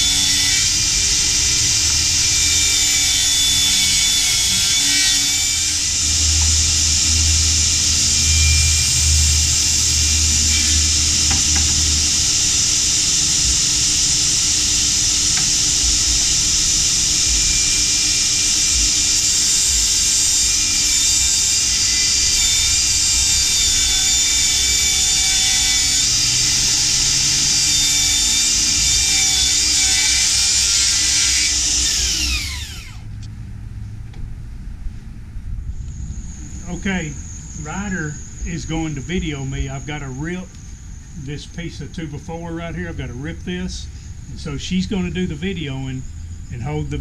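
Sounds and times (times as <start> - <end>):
circular saw cutting wood: 0.0 - 33.1
saw blade winding down: 0.0 - 33.1.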